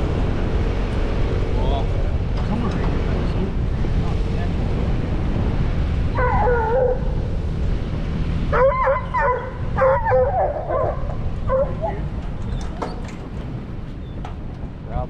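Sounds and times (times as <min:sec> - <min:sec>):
steady low rumble: 0:00.0 - 0:15.0
hounds baying: 0:06.1 - 0:07.2, 0:08.5 - 0:12.2.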